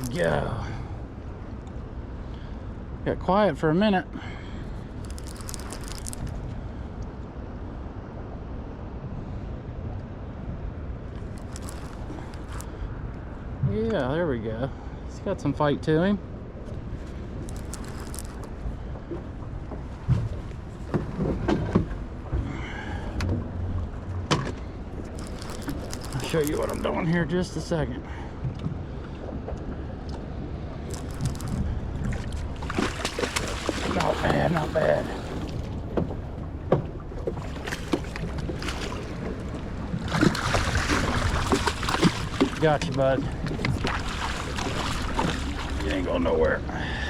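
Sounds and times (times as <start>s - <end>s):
low rumble of wind and water: 0.0s - 47.0s
knocks and clicks of fishing tackle: 5.0s - 6.4s, 11.2s - 12.7s, 17.4s - 18.6s, 24.3s - 26.9s, 30.9s - 34.4s
steady low rumble: 15.9s - 37.3s
knocks and clunks in a boat: 18.5s - 25.6s, 28.3s - 46.5s.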